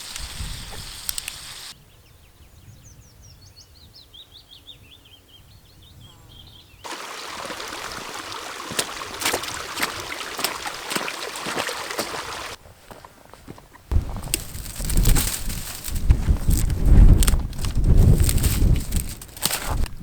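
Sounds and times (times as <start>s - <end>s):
loud hiss with crackles: 0.0s - 1.8s, 13.9s - 20.0s.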